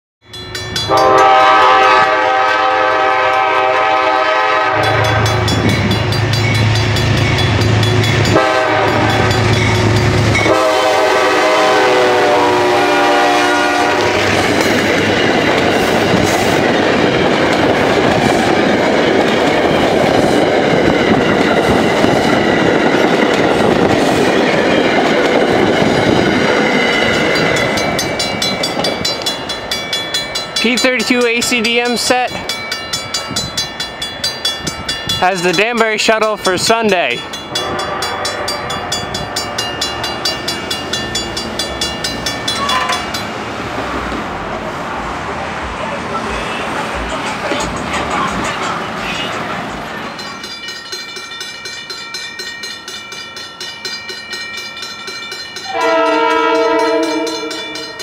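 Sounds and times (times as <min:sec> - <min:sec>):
locomotive horn blasts: 0:00.9 - 0:05.7, 0:08.2 - 0:09.5, 0:10.4 - 0:14.5, 0:37.5 - 0:39.6, 0:55.6 - 0:58.0
coaches rumbling and clattering: 0:45.6 - 0:50.5.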